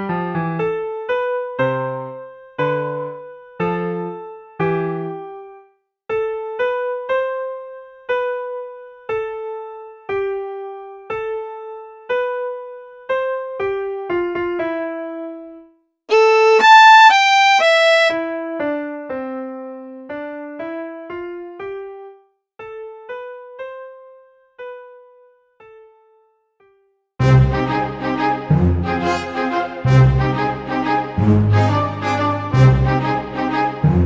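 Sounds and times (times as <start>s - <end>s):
keyboard melody single notes: 16.1s - 18.2s.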